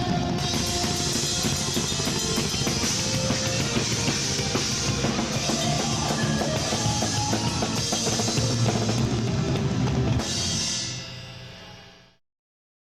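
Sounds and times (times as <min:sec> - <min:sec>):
cymbals ringing: 0:00.0 - 0:09.3
rock band playing loudly: 0:00.0 - 0:11.6.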